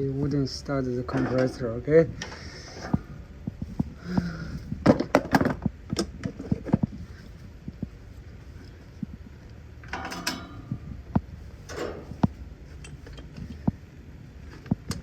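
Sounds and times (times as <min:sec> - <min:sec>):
tools clicking on metal: 0:09.8 - 0:10.8.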